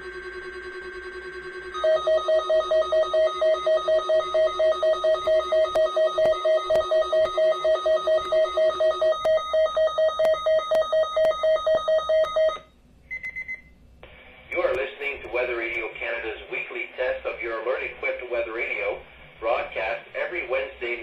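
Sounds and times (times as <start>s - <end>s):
alarm beeping: 0.0s - 13.7s.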